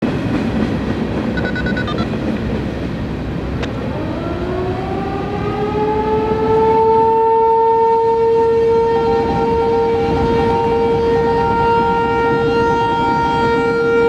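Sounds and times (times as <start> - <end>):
warning siren winding up: 1.4 - 2.1
electronic beeps: 1.4 - 2.2.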